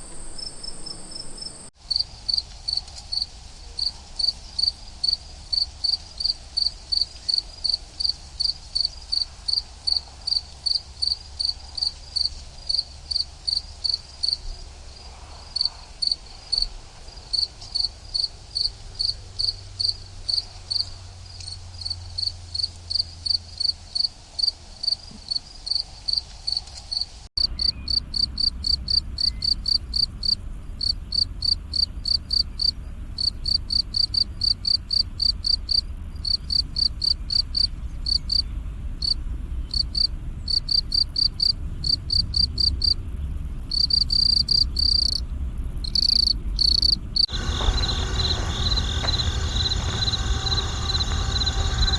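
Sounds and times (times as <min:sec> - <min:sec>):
crickets chirping: 0:00.0 - 0:03.3, 0:22.9 - 0:51.9.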